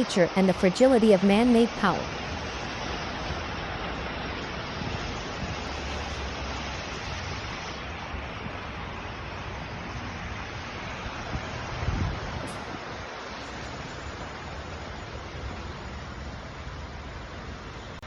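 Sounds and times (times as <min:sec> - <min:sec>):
floodwater rushing: 0:00.0 - 0:17.8.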